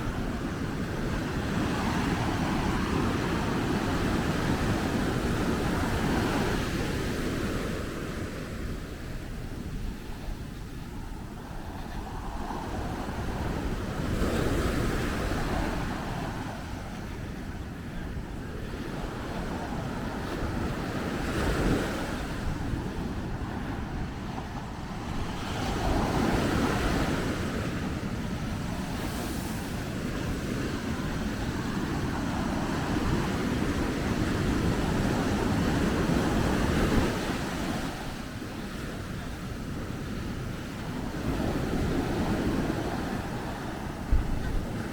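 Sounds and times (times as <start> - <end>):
wind rumbling on microphone: 0.0 - 44.9
ocean surf breaking: 18.9 - 44.9.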